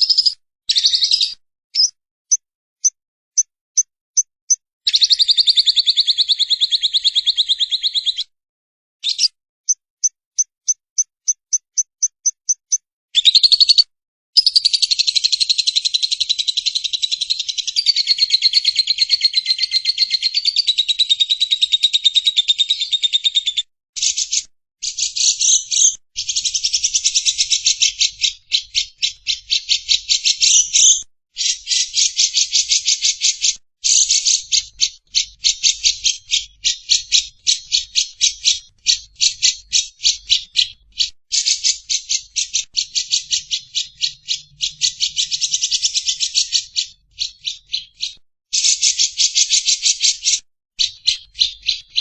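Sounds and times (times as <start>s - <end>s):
lovebird chattering trills: 0.0s - 1.9s, 11.5s - 13.8s
short high bird chirps: 0.0s - 8.3s, 9.0s - 23.4s, 24.0s - 32.8s.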